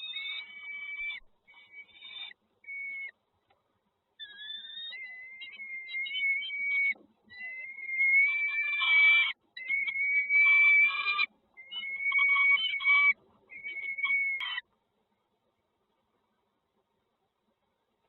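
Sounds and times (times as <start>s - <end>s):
nestlings calling shrilly: 0.0s - 3.1s, 4.2s - 14.6s.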